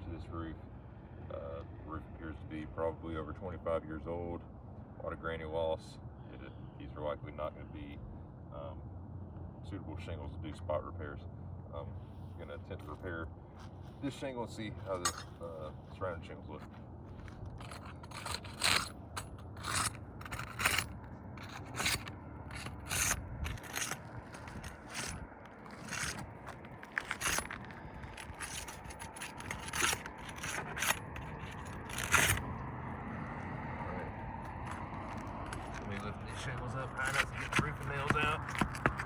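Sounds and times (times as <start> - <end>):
gritty scraping on roof shingles: 16.6 - 32.7, 34.4 - 39.0.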